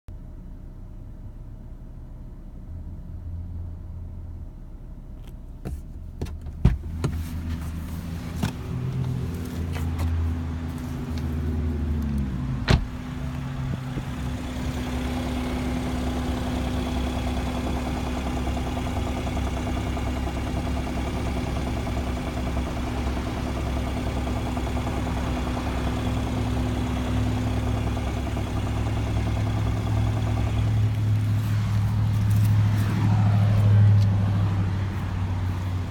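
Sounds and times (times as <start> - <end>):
car engine running: 0.1 - 35.9
sharp engine knocks: 12.6 - 13.1.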